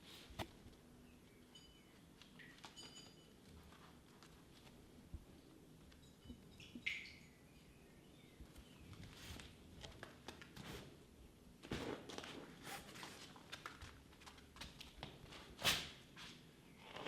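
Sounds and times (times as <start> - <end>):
soft taps and rustles: 8.4 - 11.0.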